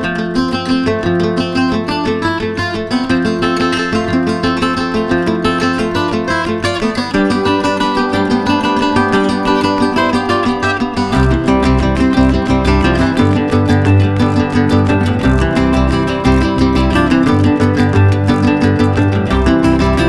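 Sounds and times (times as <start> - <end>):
strummed acoustic guitar: 0.0 - 20.0
bass line: 11.1 - 20.0.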